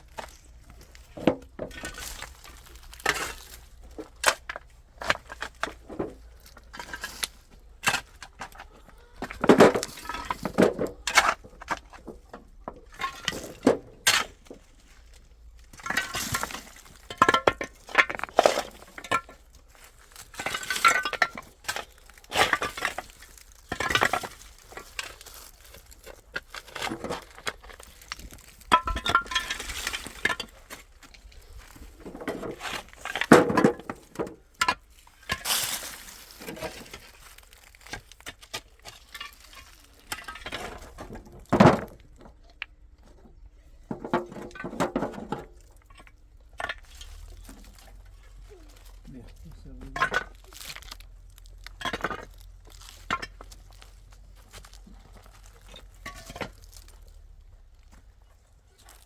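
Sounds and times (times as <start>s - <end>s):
hard objects clinking and knocking: 15.8s - 35.5s.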